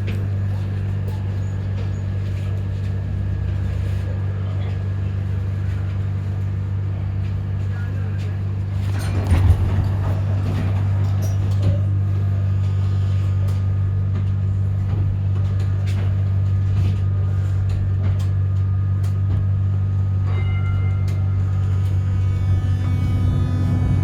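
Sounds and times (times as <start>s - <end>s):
tram running hum: 0.0s - 24.0s
bell-like ringing tone: 20.3s - 21.4s.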